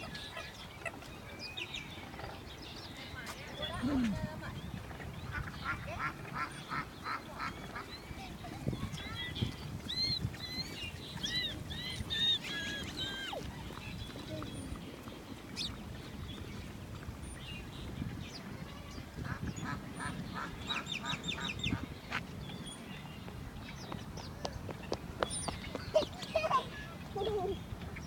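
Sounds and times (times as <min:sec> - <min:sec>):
ducks calling: 0:05.2 - 0:13.8, 0:19.2 - 0:21.9.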